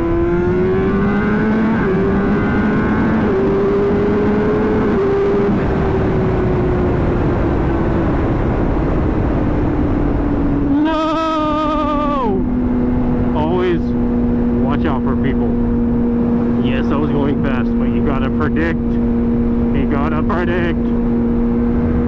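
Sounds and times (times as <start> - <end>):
motorcycle engine revving: 0.0 - 22.0
wind rush: 15.4 - 22.0.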